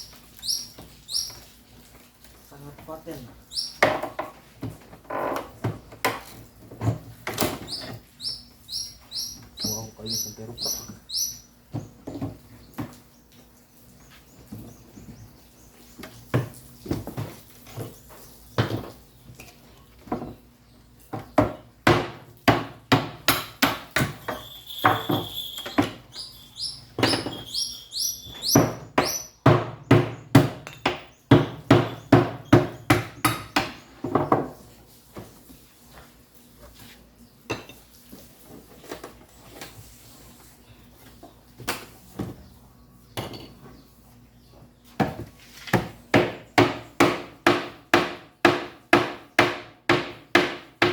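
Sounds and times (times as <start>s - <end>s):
short rising squeaks: 24.2s - 29.3s
hammer blows on wooden crate: 28.3s - 34.6s, 45.8s - 50.9s.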